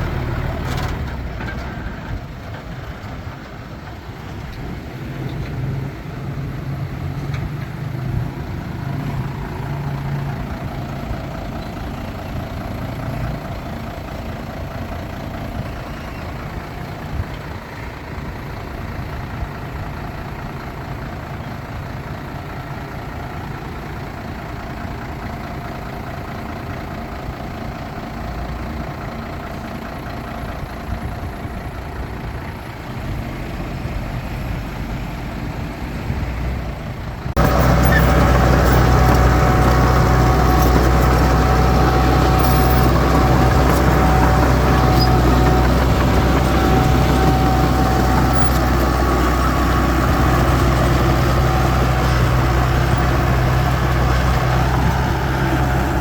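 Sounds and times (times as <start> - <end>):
heavy diesel engine running: 0.0 - 56.0.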